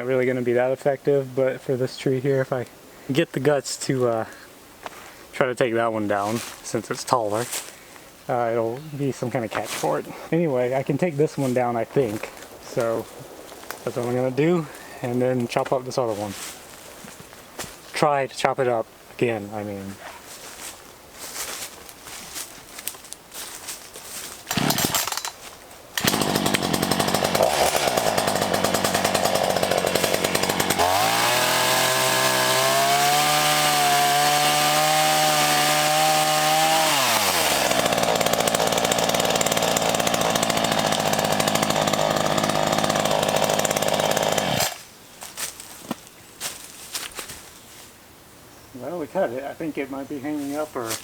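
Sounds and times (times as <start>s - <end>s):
chainsaw cutting wood: 24.2s - 44.9s.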